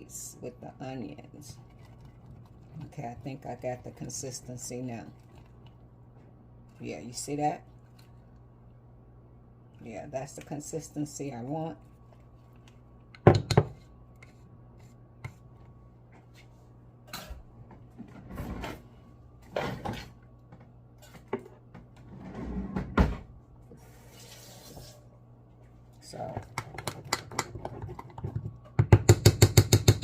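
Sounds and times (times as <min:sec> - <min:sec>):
steady low hum: 0:00.0 - 0:24.2
spoon knocking and scraping in bowl: 0:13.2 - 0:15.4.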